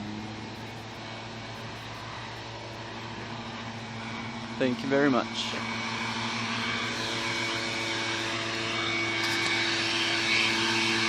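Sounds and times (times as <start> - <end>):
engine humming: 0.0 - 11.0.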